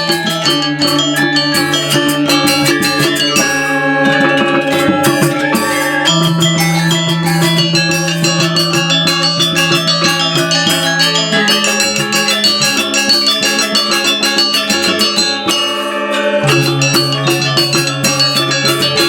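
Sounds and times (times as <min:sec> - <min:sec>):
metallophones playing rapid figures: 0:00.0 - 0:19.0.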